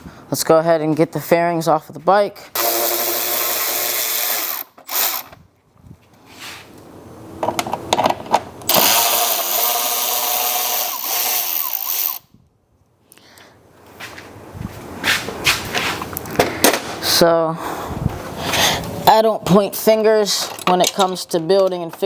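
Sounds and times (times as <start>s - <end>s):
power drill spinning: 2.5s - 5.4s, 8.7s - 12.3s
parts knocking and clattering: 7.4s - 9.0s, 19.8s - 22.0s.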